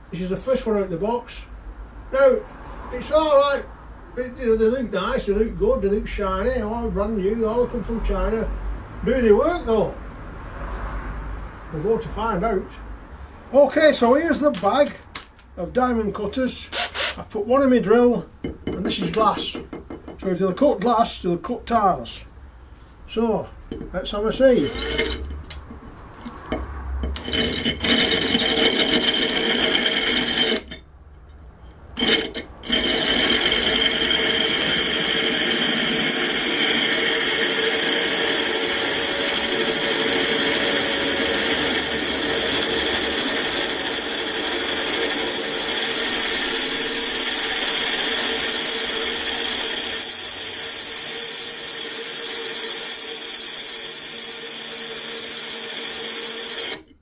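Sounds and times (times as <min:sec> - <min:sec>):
electric drill grinding through glass: 0:24.6 - 0:25.3, 0:27.2 - 0:30.8, 0:32.0 - 0:56.9.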